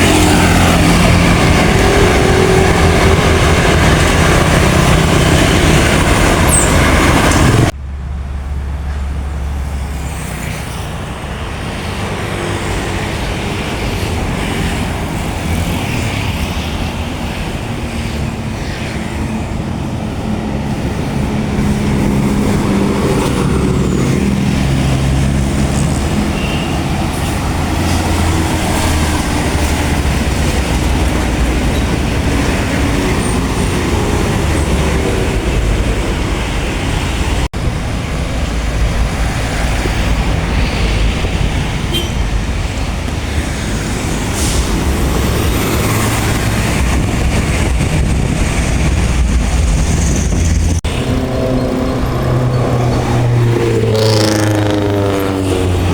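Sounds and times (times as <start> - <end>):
diesel buses passing: 0.0 - 55.9
low engine drone: 46.7 - 55.9.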